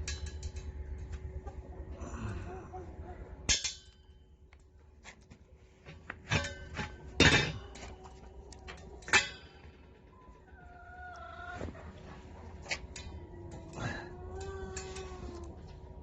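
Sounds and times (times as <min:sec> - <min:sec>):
metal striking metal with ring: 0:03.5 - 0:04.5, 0:06.3 - 0:08.0, 0:08.7 - 0:09.9.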